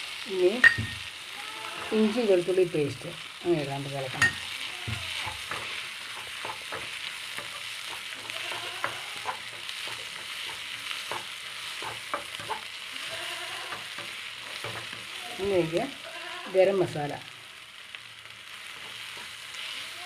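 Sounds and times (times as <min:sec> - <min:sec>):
onions sizzling in a pan: 0:00.0 - 0:20.0
spoon scraping and tapping pan: 0:00.6 - 0:01.1, 0:04.1 - 0:12.8, 0:13.6 - 0:15.1, 0:18.7 - 0:19.4.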